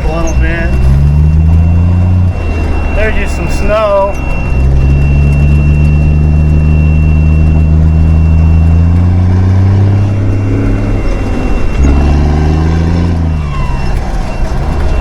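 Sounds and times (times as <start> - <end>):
truck engine braking: 0.0 - 15.0.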